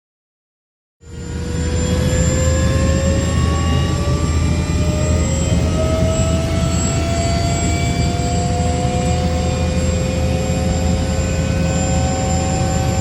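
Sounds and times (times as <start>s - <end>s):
helicopter rotor and engine rumble: 1.0s - 13.0s
turbine whine: 1.0s - 13.0s.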